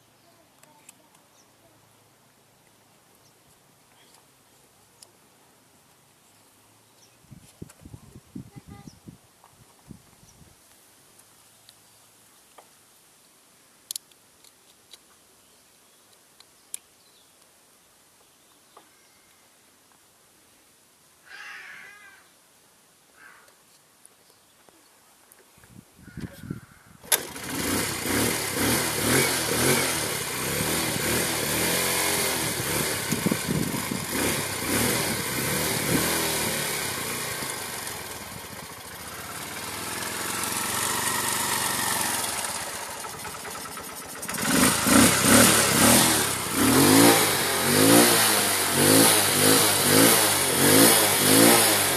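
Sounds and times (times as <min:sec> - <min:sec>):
car engine starting and revving: 0:27.1 - 0:51.9.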